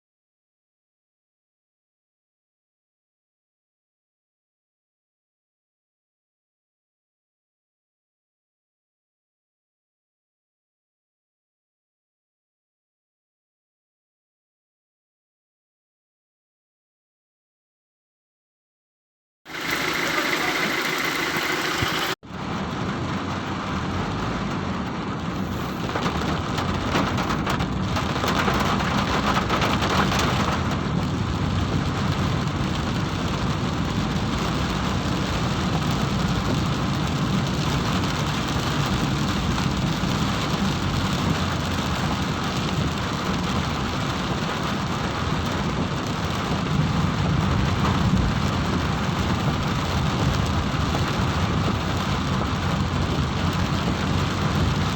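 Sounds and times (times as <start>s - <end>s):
heavy rain hissing: 19.5s - 22.2s, 25.3s - 27.6s
low rumble: 20.9s - 44.2s.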